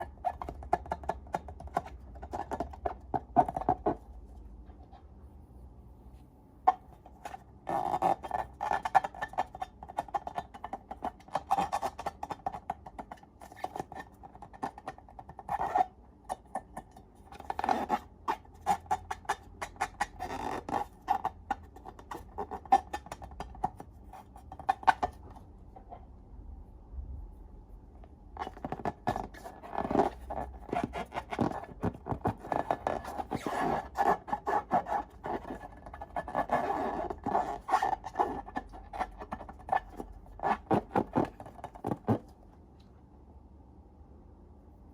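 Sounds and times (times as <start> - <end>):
low steady hum: 0.0 - 44.9.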